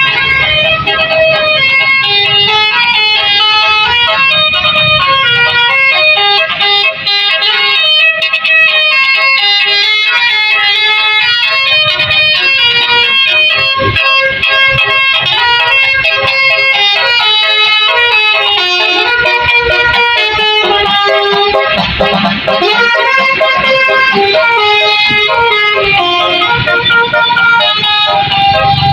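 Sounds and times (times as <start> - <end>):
bus musical horn tune: 0.0 - 28.9
low vehicle rumble: 11.4 - 28.9.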